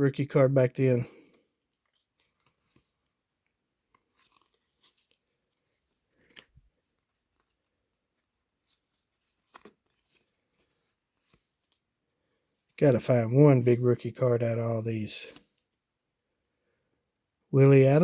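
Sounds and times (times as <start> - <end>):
trading cards rustling and clicking: 3.8 - 7.8, 8.6 - 11.8.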